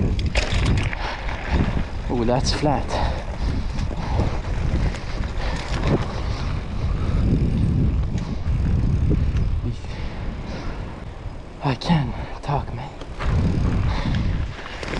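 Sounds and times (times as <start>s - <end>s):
wind buffeting microphone: 0.0s - 14.9s.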